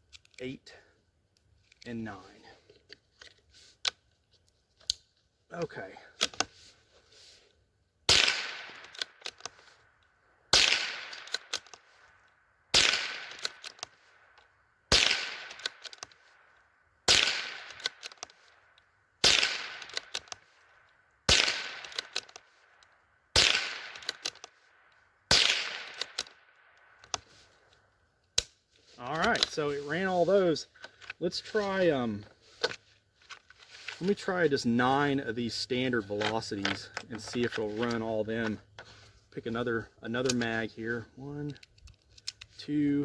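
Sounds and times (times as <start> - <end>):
rifle shots echoing: 8.1 - 9.0, 10.5 - 11.5, 12.7 - 13.6, 14.9 - 15.8, 17.1 - 17.9, 19.2 - 20.1, 21.3 - 22.2, 23.3 - 24.3, 25.3 - 26.5
rifle action clicks: 19.3 - 24.6, 25.3 - 27.3.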